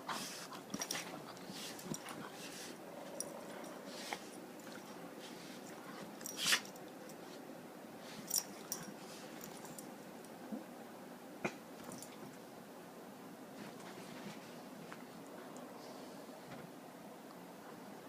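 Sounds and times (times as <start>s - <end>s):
cat and dog scuffling: 0.0s - 10.0s, 13.5s - 16.1s
low steady background: 0.0s - 18.0s.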